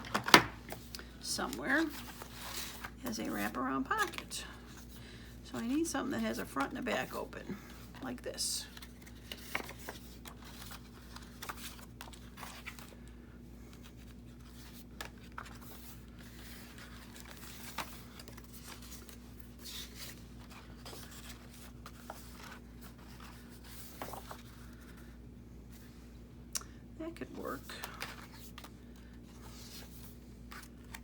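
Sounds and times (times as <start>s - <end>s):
low steady hum: 0.0s - 31.0s
paper rustling and sliding: 13.7s - 25.0s.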